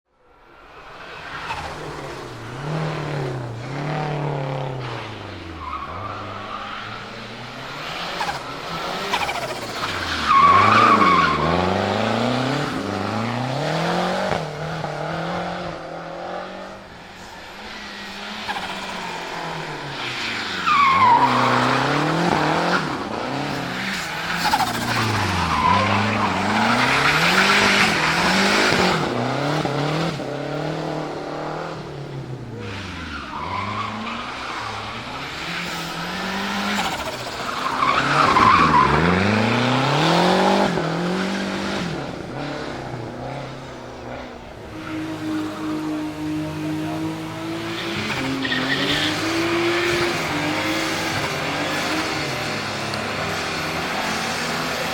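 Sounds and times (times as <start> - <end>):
car engine revving: 1.2 - 54.9
tyre squeal: 23.8 - 28.7.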